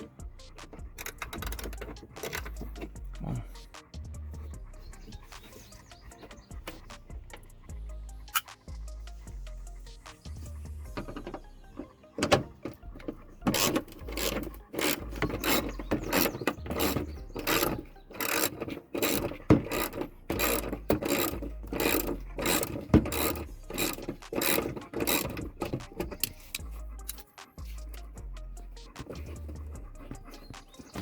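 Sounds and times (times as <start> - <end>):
hand ratchet clicking: 0.0 - 3.4, 10.9 - 28.2, 28.8 - 31.0.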